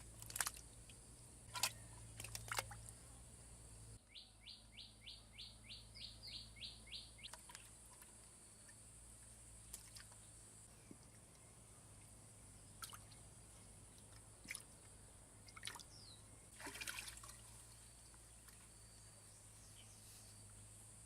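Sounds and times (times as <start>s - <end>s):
sharp water drips: 16.6s - 17.5s.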